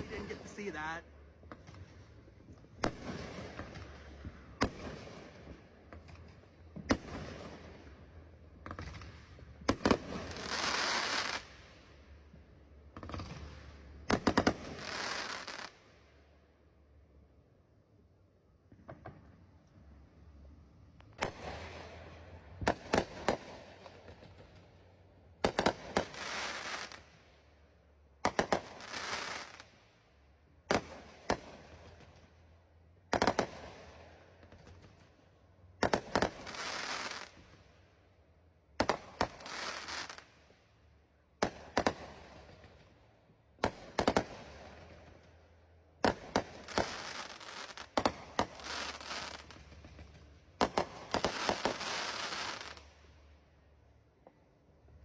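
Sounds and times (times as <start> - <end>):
fireworks bursting: 0.0 - 8.0, 8.6 - 11.6, 12.9 - 15.9, 21.0 - 27.2, 28.2 - 29.8, 33.1 - 35.2, 35.8 - 37.7, 38.8 - 40.4, 41.4 - 43.0, 43.6 - 45.3, 46.0 - 53.0.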